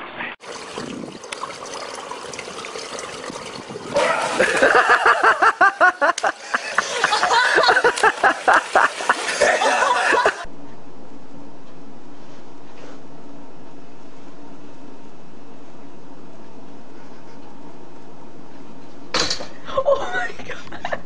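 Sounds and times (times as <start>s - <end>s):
water running and splashing: 0.4s - 10.5s
people laughing hard: 4.0s - 10.5s.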